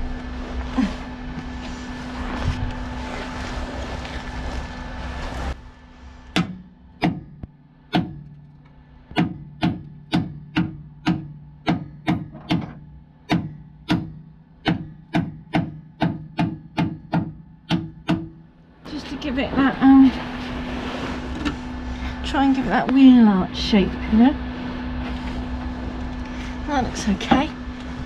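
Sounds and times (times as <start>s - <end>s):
steady hiss with low hum: 0.0s - 14.6s, 17.1s - 28.0s
hammer striking steel panel: 6.4s - 8.5s, 9.1s - 18.5s.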